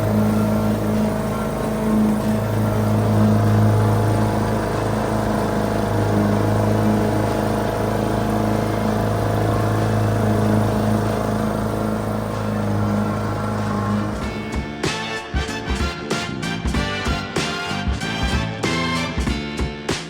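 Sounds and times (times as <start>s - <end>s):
lawn mower engine running: 0.0s - 20.0s.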